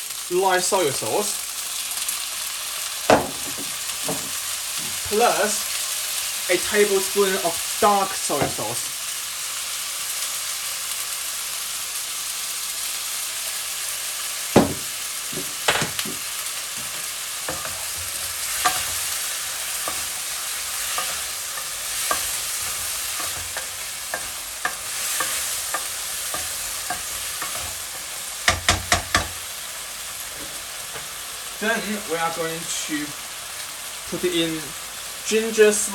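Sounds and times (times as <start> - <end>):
chicken wings sizzling in pan: 0.0 - 35.9
utensil knocking against pan: 3.1 - 5.0, 14.6 - 16.2, 28.5 - 29.4.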